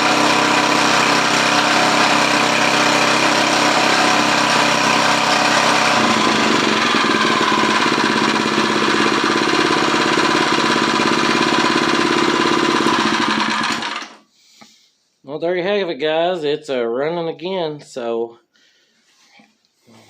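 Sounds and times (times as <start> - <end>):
small tiller engine running: 0.0 - 14.2.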